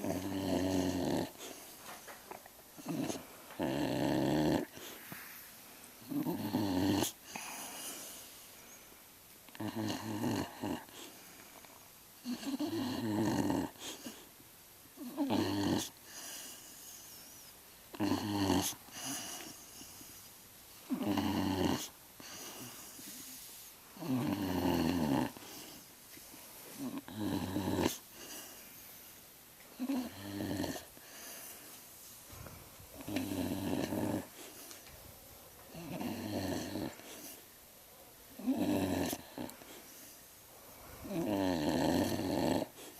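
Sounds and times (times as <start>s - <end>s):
pet snoring and grunting: 0.0s - 1.6s, 2.8s - 4.9s, 6.0s - 7.6s, 9.5s - 11.1s, 12.2s - 14.3s, 15.0s - 16.7s, 17.9s - 19.7s, 20.9s - 22.8s, 24.0s - 25.8s, 26.8s - 28.5s, 29.8s - 31.0s, 32.3s - 34.6s, 35.7s - 37.4s, 38.4s - 39.7s, 41.0s - 42.9s.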